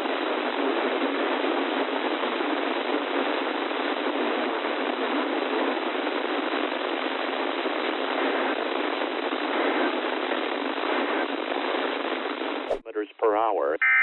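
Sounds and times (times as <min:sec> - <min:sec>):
radio static hiss: 0:08.2 - 0:13.7.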